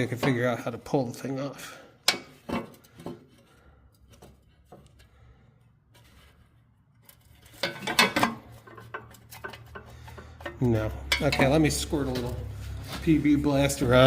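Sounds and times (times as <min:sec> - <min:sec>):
tools clinking on sheet metal: 0:07.5 - 0:12.4.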